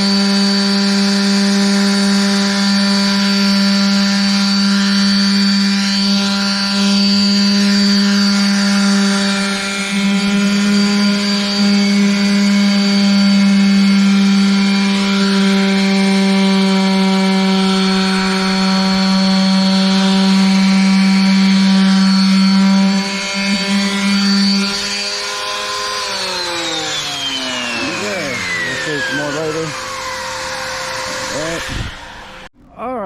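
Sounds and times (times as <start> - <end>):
power sander running: 0.0 - 32.6.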